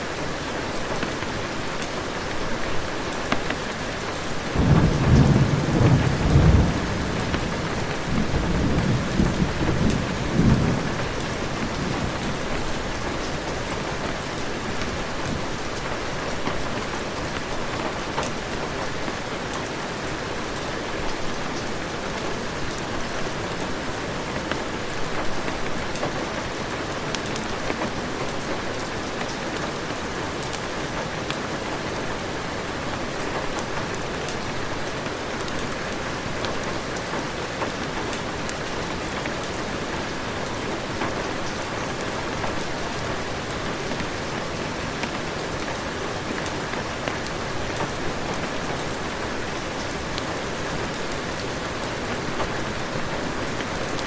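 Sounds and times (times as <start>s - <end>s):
heavy rain falling: 0.0s - 54.0s
thunder rumbling: 4.6s - 13.7s.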